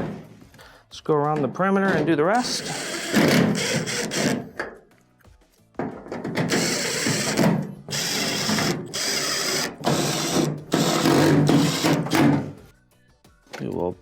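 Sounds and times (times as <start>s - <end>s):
power drill driving screws: 2.4s - 4.5s, 6.4s - 12.5s.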